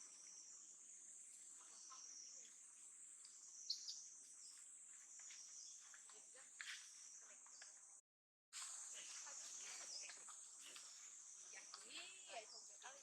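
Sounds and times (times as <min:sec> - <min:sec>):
insect chorus: 0:00.0 - 0:08.0, 0:08.6 - 0:13.0
sharp insect chirp: 0:00.0 - 0:08.0.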